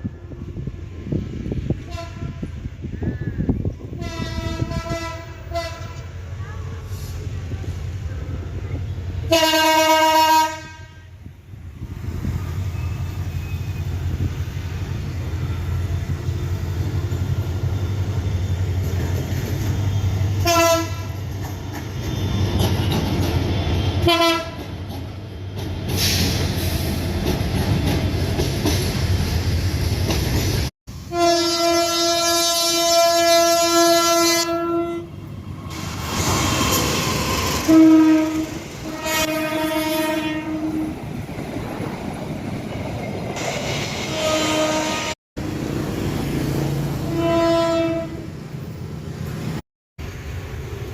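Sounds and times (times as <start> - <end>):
train rumble: 0.0 - 50.9
locomotive horn blasts: 1.8 - 2.6, 3.9 - 6.1, 9.3 - 11.2, 20.4 - 21.2, 24.0 - 24.6, 31.1 - 35.1, 37.6 - 40.9, 44.1 - 45.2, 47.0 - 48.3.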